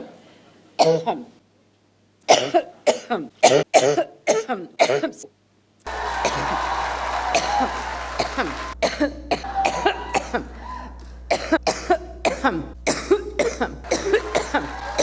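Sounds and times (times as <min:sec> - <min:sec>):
steady low hum: 0:00.0 - 0:15.0
woman coughing: 0:00.8 - 0:01.2, 0:02.3 - 0:05.2, 0:08.2 - 0:10.5, 0:11.3 - 0:14.7.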